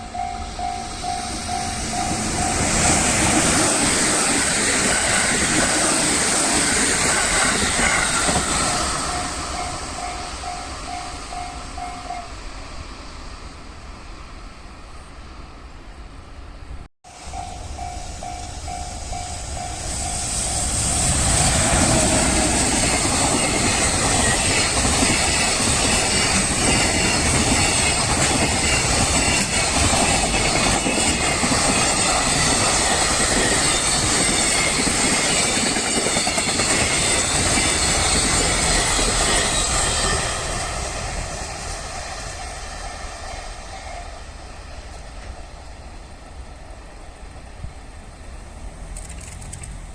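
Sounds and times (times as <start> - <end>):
train rumbling over crossing: 0.0 - 49.9
wheels clacking over rail joints: 20.9 - 41.8.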